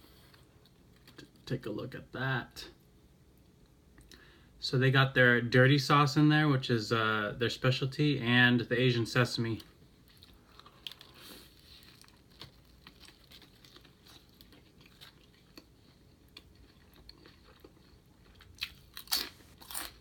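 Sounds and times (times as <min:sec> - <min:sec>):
person chewing food: 0:09.6 - 0:20.0.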